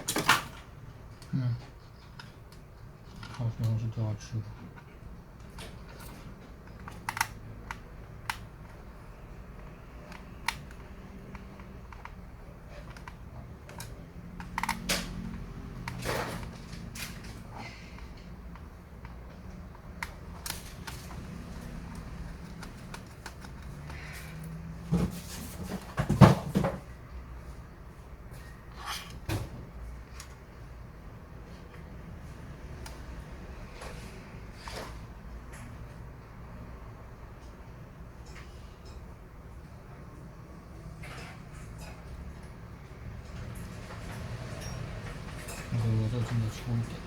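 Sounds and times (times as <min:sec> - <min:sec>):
plastic and metal parts clicking: 0:04.6 - 0:08.9, 0:09.5 - 0:24.6.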